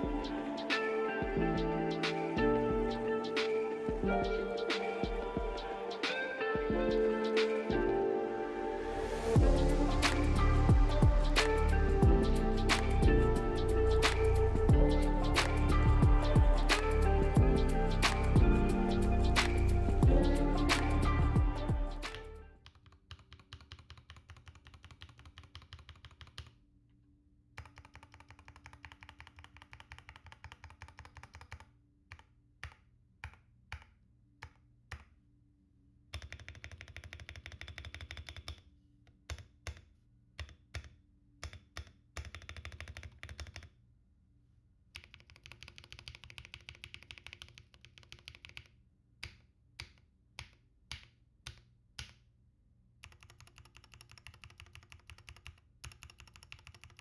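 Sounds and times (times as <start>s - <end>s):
mechanical keyboard typing: 22.1s - 26.5s, 27.6s - 33.8s, 36.2s - 38.6s, 41.4s - 43.7s, 45.0s - 48.7s, 53.0s - 57.0s.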